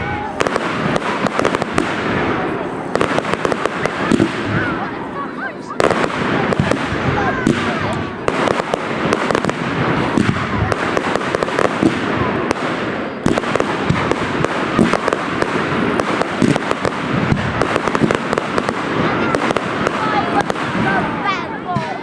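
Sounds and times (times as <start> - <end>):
fireworks crackling and banging: 0.0 - 22.0.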